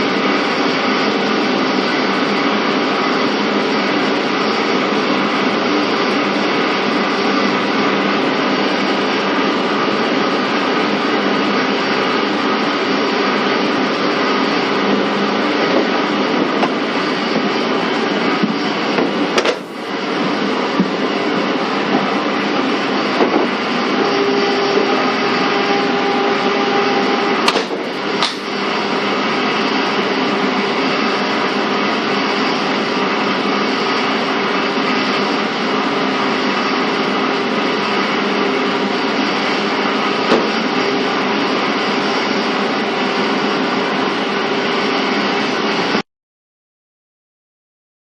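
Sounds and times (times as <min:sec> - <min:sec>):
train wheels rumbling on rail: 0:00.0 - 0:46.0
train motor hum: 0:14.8 - 0:20.8, 0:23.0 - 0:29.3
steady tone: 0:19.4 - 0:20.0, 0:24.1 - 0:28.8.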